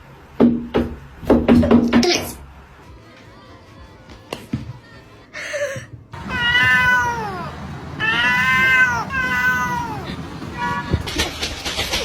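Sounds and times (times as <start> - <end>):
cat meowing: 6.2 - 11.2.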